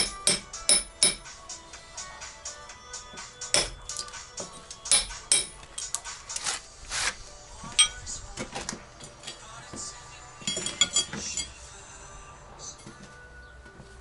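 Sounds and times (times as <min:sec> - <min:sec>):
tools clattering: 0:03.9 - 0:06.0, 0:07.7 - 0:09.5, 0:10.4 - 0:11.6.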